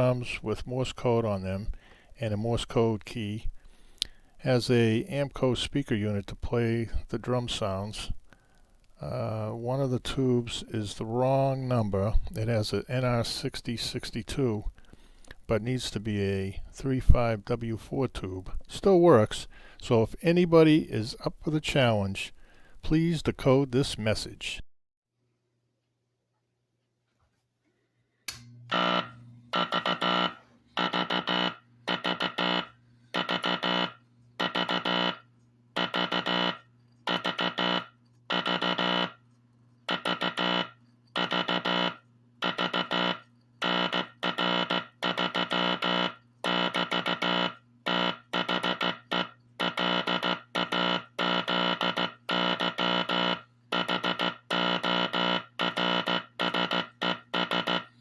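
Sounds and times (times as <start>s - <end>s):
buzzy morse code tone: 0.0s - 24.6s, 28.7s - 39.2s, 39.9s - 58.0s
steady low hum: 0.0s - 24.6s.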